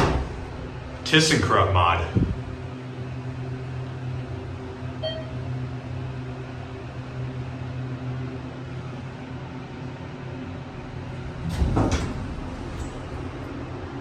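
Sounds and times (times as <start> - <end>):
elevator low hum: 0.0 - 14.0
short beep: 5.0 - 5.4.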